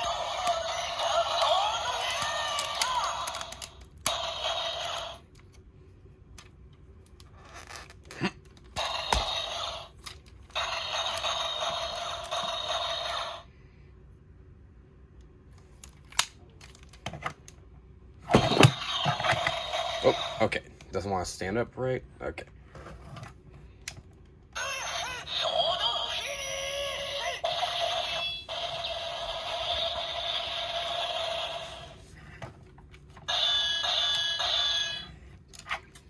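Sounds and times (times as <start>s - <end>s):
toy electronic sound effects and music: 0.0s - 5.2s, 24.6s - 31.9s, 33.3s - 35.1s.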